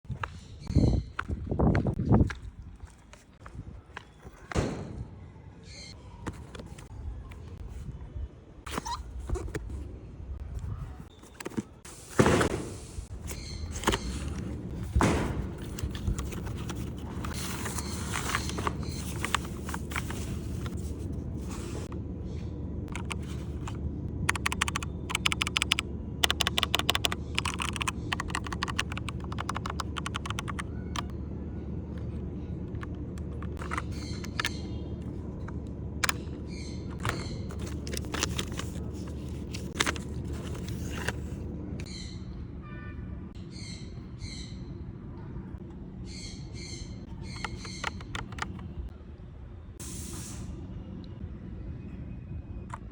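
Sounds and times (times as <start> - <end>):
steady low hum: 0.1 - 49.8
keyboard key clicks: 22.9 - 23.2, 24.3 - 31.1, 47.3 - 48.7.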